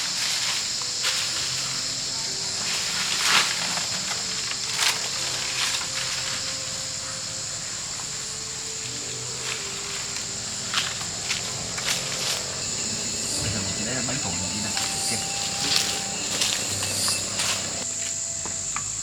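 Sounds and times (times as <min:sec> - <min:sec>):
high-pitched insect chorus: 0:00.0 - 0:19.0.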